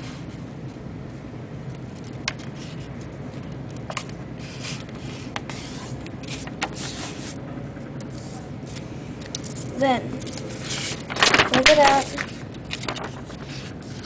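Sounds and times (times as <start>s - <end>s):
steady low hum: 0.0s - 14.0s
paper rustling and crackling: 8.0s - 14.0s.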